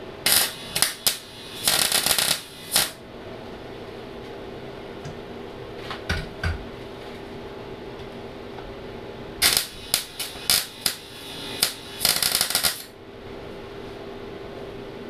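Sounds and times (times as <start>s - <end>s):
steady hum: 0.0s - 15.0s
crackling welding arc: 0.2s - 3.0s, 9.4s - 13.0s.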